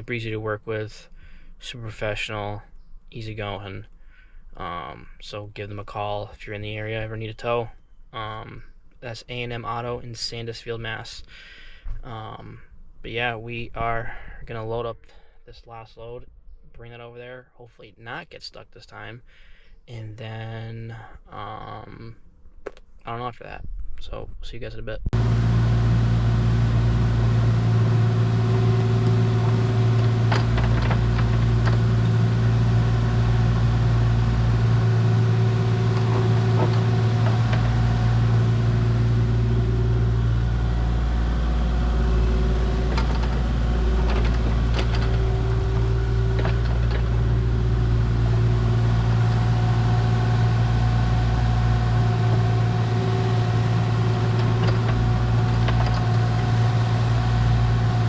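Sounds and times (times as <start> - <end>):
large engine running: 25.2 - 58.0
knocks and clanks: 27.7 - 49.6, 51.8 - 58.0.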